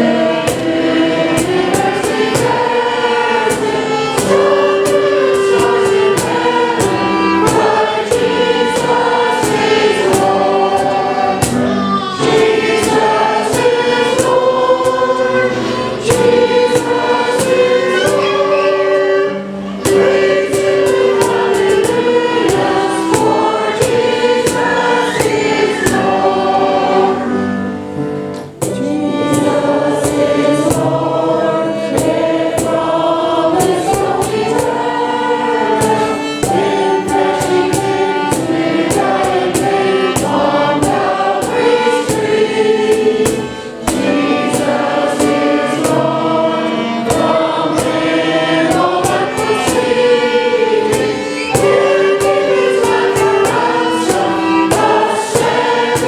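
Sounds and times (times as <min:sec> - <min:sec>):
congregation and choir singing a hymn: 0:00.0 - 0:56.0
instrumental accompaniment: 0:00.0 - 0:56.0
singers breathing: 0:42.9 - 0:43.9.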